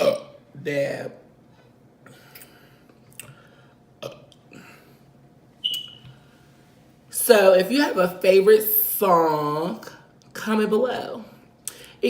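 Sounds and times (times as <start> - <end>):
small burps: 0.0 - 0.4, 4.0 - 4.8
mouth smacks and clicks: 5.6 - 6.0.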